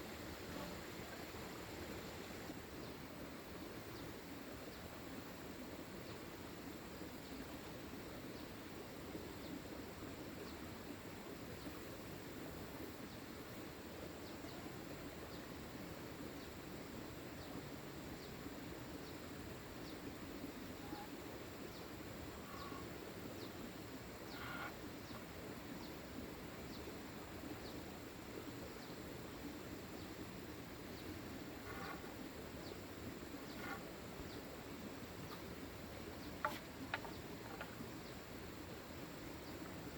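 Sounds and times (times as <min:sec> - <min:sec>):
faint insect chirp: 0:00.0 - 0:39.9
low background hiss: 0:00.0 - 0:39.9
short bird calls: 0:20.8 - 0:21.2, 0:22.3 - 0:23.0, 0:24.3 - 0:25.2, 0:31.6 - 0:32.2, 0:33.4 - 0:34.4.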